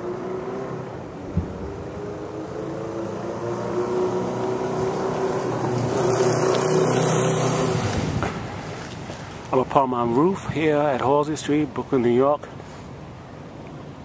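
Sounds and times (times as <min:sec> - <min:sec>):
engine humming: 0:00.0 - 0:11.0.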